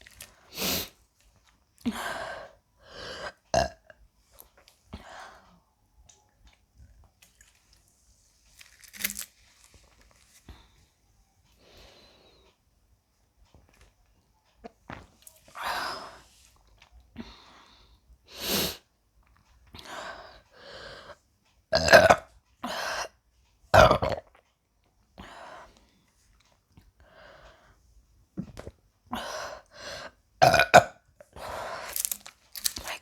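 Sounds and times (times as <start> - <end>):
woman burping: 3.6 - 4.0, 21.7 - 22.3, 23.8 - 24.3, 30.4 - 31.0.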